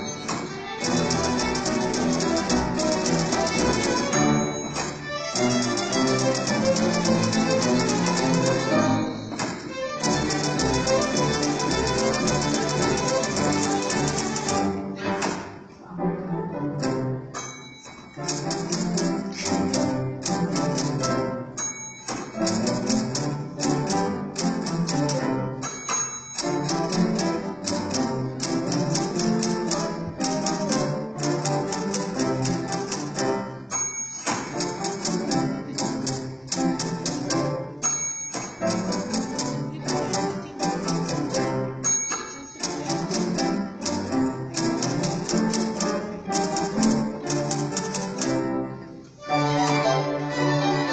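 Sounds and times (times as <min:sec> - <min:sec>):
typewriter carriage bell dinging: 0:00.0 - 0:14.7, 0:17.3 - 0:48.3
typewriter key clicks: 0:09.4 - 0:14.6, 0:38.3 - 0:48.4.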